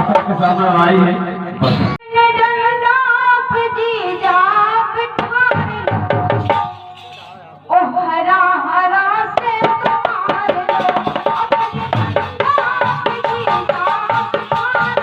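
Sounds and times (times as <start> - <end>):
fast hand drum rhythm: 9.4 - 15.0.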